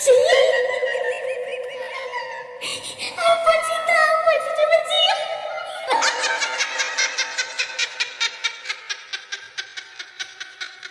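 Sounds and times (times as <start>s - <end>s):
person giggling: 5.8s - 10.9s.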